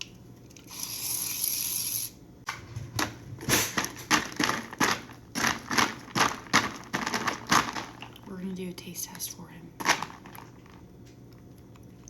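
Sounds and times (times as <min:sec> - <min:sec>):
drink rattling while stirred: 0:03.8 - 0:08.3, 0:09.8 - 0:10.8.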